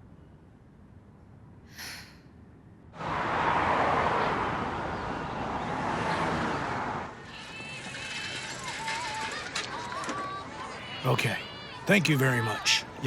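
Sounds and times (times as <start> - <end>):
brief high hiss: 1.8 - 2.2
traffic rushing: 3.0 - 13.0.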